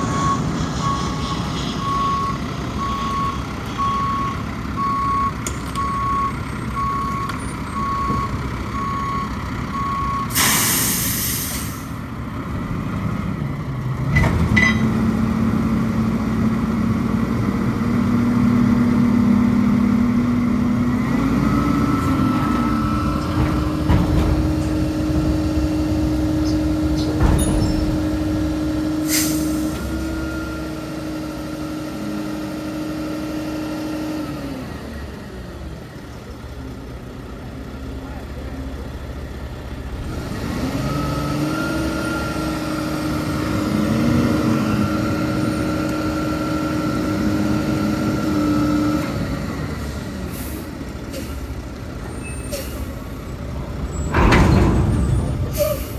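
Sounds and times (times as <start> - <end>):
air brakes hissing: 0.0 - 3.9, 10.3 - 12.0, 24.4 - 30.2, 50.2 - 55.9
truck backup alarm beeping: 0.0 - 12.0, 18.1 - 32.3, 52.1 - 55.9
diesel engine revving: 0.0 - 55.9.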